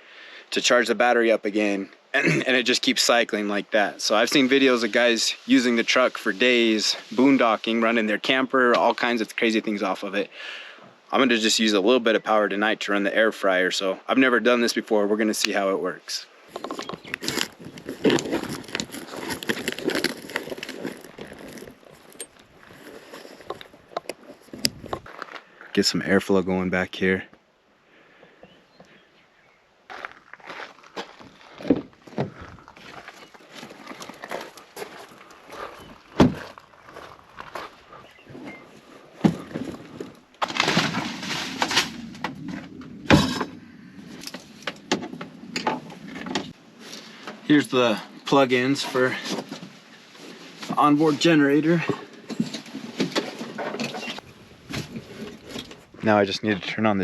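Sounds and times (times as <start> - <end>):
gear rustling: 16.5 - 25.3
rustling and scraping: 16.5 - 25.7, 29.9 - 47.7, 48.3 - 56.9.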